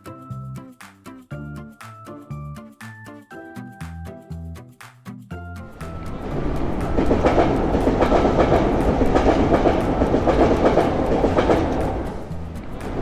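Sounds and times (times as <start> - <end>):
train passing rumble: 5.7 - 13.0
wheels clicking on rails: 5.7 - 13.0.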